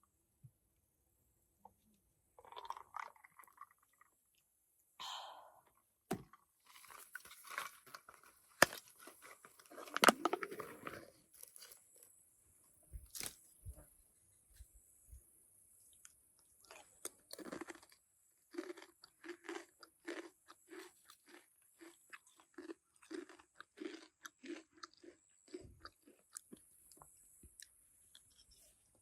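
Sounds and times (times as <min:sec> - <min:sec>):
close crunching and handling: 0:06.7 - 0:11.9.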